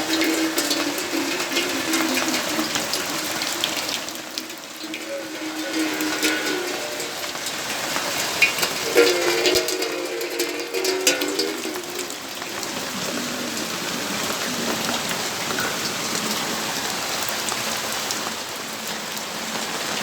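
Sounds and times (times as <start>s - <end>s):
plucked string music: 0.0s - 12.5s
raindrops ticking and dripping: 0.0s - 20.0s.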